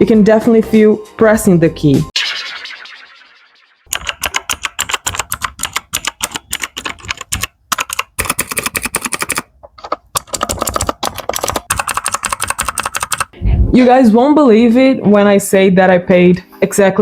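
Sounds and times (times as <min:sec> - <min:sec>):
mechanical keyboard clicks: 0:03.9 - 0:13.4.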